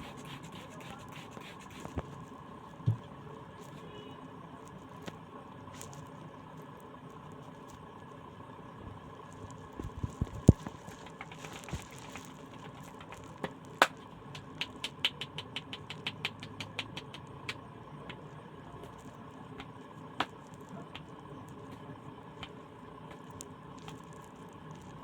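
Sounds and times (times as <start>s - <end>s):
faint steady hum: 0.0s - 25.0s
hands tapping during massage: 10.4s - 18.2s.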